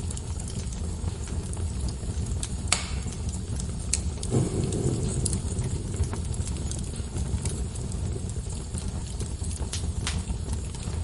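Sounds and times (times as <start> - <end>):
fire crackles and pops: 0.0 - 11.0
fire flames rumbling: 0.0 - 11.0
soft low thump: 4.3 - 7.6.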